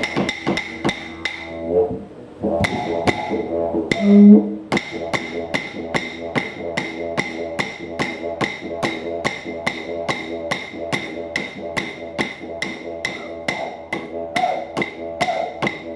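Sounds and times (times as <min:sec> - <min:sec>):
clapsticks beat: 0:00.0 - 0:01.6, 0:02.6 - 0:04.2, 0:04.8 - 0:15.9
didgeridoo drone: 0:00.0 - 0:15.9
loud held hoot: 0:01.0 - 0:04.7, 0:12.9 - 0:15.9.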